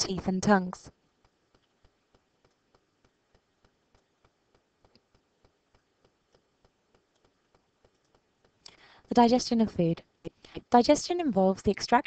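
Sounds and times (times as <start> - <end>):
faint regular ticks: 0.8 - 9.1.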